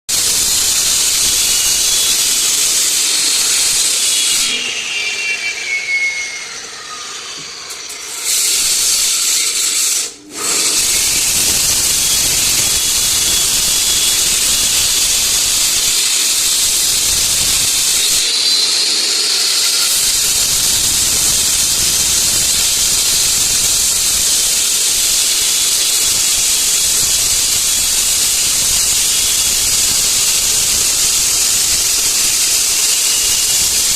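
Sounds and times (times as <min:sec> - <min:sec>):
concrete saw grinding: 0:00.1 - 0:33.9.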